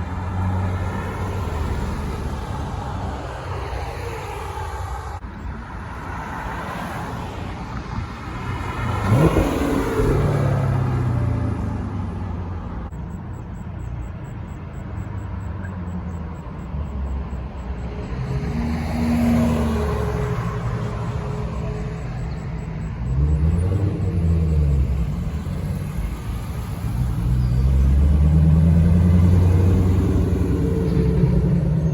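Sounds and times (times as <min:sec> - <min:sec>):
car engines running: 0:00.0 - 0:31.9
car engine revving sharply: 0:08.7 - 0:11.5, 0:22.6 - 0:31.9.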